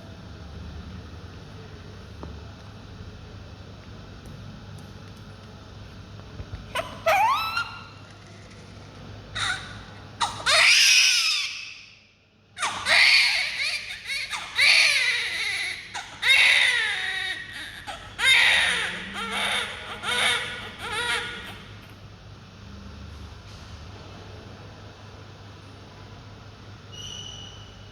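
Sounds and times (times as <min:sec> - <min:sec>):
steady low hum: 0:00.0 - 0:26.9
baby crying: 0:06.8 - 0:08.0, 0:09.4 - 0:11.7, 0:12.6 - 0:21.7.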